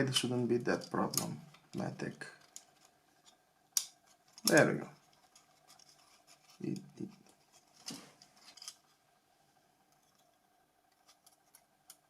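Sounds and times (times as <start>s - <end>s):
small phone parts clicking: 2.4s - 6.6s.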